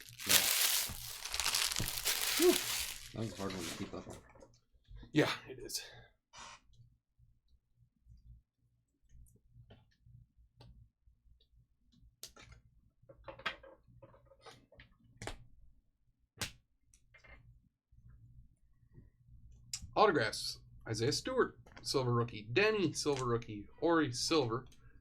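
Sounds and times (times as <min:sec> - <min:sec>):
trading cards being handled: 0:00.0 - 0:03.9.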